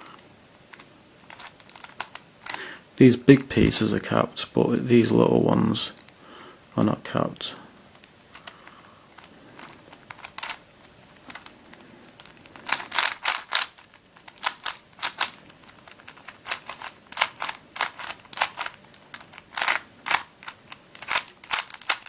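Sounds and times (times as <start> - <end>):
twisty puzzle plastic clicking: 0.7 - 2.6, 11.2 - 22.0.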